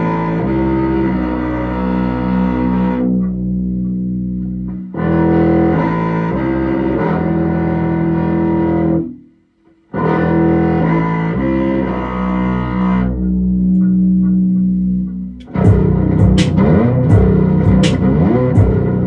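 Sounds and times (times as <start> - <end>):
plucked upright bass: 0.0 - 8.9, 10.5 - 19.0.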